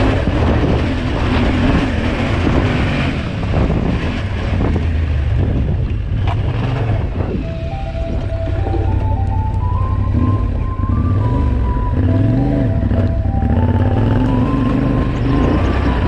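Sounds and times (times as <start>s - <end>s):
motorcycle engine running: 0.0s - 16.0s
wind buffeting microphone: 0.0s - 16.0s
music: 7.4s - 16.0s.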